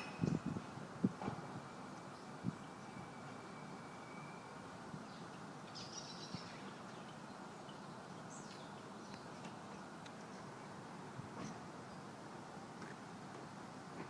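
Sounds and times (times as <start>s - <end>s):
faint high bird chirps: 0.0s - 0.5s, 2.1s - 10.5s
outdoor background hiss: 0.0s - 14.0s.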